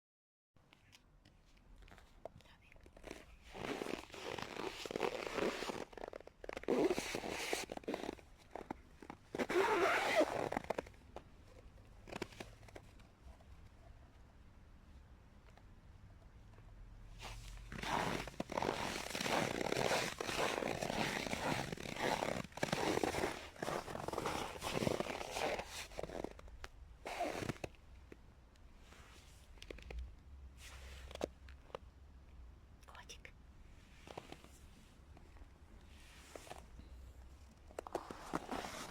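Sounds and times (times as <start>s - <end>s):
footsteps crunching on snow: 17.2s - 26.2s.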